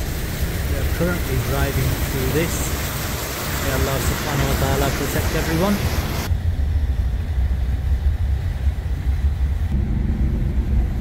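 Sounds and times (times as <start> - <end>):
car engine and road noise: 0.0 - 11.0
higher hum: 5.8 - 11.0.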